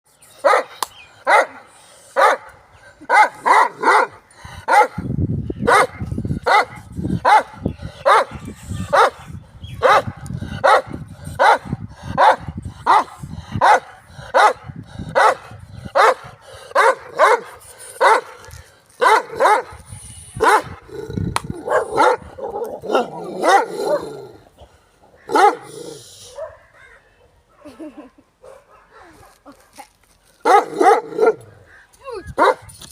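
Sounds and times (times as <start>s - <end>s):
dog barking: 0.5s - 0.7s, 1.3s - 1.6s, 2.2s - 2.4s, 3.1s - 5.0s, 5.7s - 7.5s, 8.1s - 9.2s, 9.8s - 14.6s, 15.2s - 15.4s, 16.0s - 18.3s, 19.0s - 19.7s, 20.4s - 20.7s, 21.6s - 24.0s, 25.3s - 25.7s, 26.4s - 26.8s, 28.4s - 29.4s, 30.5s - 31.4s, 32.4s - 32.6s.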